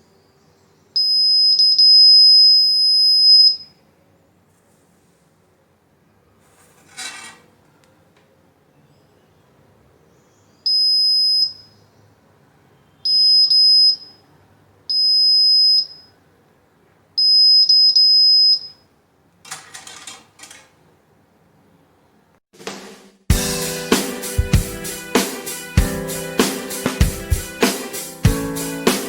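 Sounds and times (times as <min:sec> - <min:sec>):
rustling: 0:06.4 - 0:07.9
high-pitched buzzer beeps: 0:17.2 - 0:18.8.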